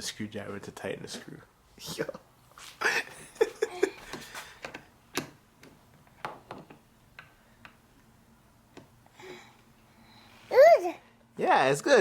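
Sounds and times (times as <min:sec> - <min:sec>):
child's vocal sounds: 0:10.4 - 0:11.1.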